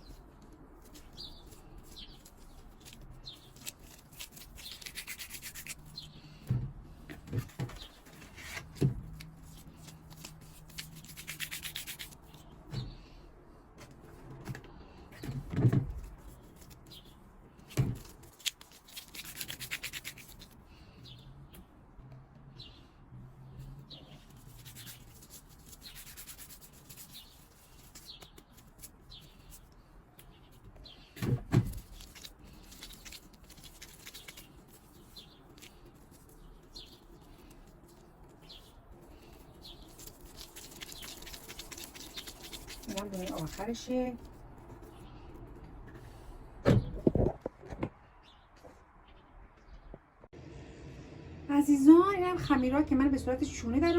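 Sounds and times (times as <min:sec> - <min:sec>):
hands rolling dough: 0:31.8 - 0:45.0.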